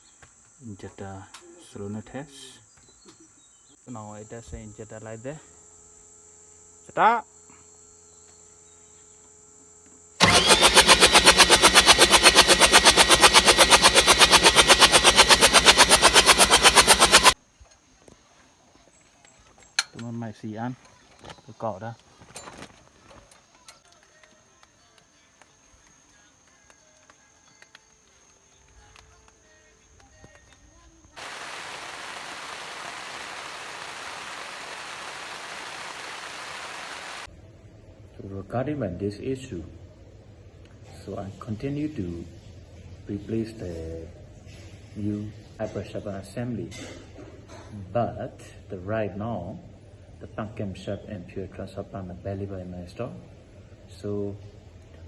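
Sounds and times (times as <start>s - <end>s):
diesel engine running loudly: 10.2s - 17.4s, 31.2s - 37.3s
steady hiss: 31.2s - 37.3s.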